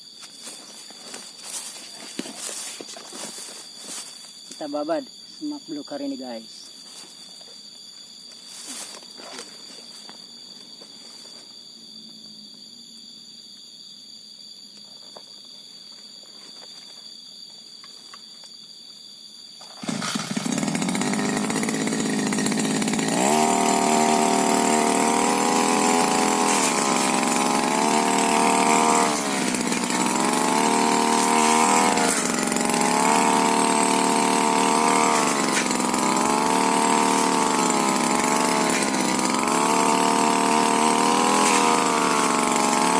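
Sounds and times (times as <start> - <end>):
brush cutter engine revving: 19.6 - 42.9.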